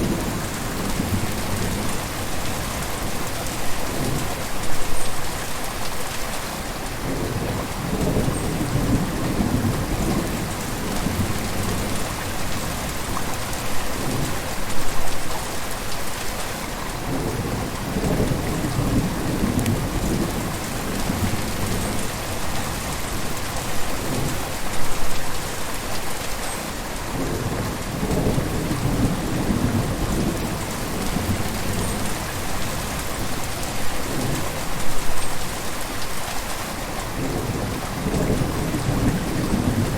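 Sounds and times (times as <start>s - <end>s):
river flowing: 28.5s - 38.1s.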